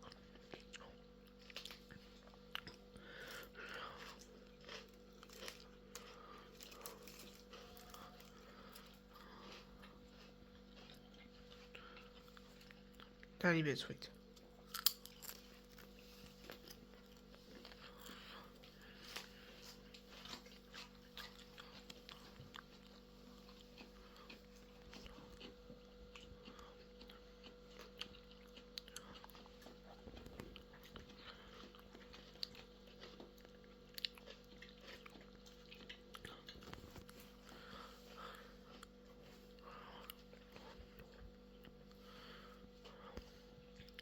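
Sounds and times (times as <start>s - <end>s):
low steady hum: 0.0s - 44.0s
popcorn being chewed: 0.0s - 44.0s.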